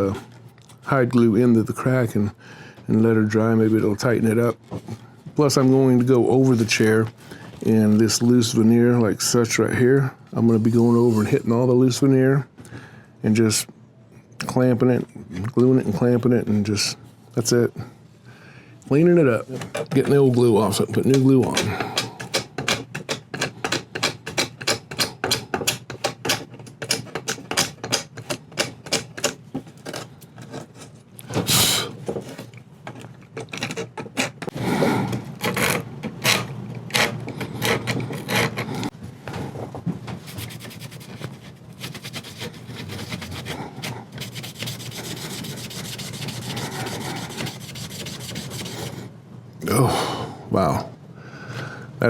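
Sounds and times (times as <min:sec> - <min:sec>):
hand scraping on wood: 0:40.2 - 0:49.1.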